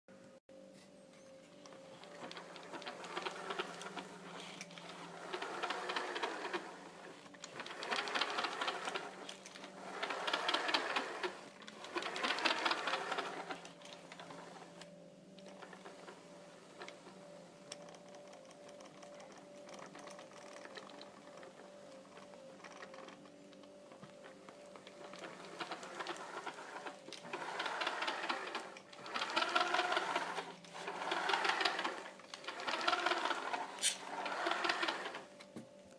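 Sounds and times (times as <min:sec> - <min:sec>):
rc car drivetrain whirring clatter: 0:01.9 - 0:35.5.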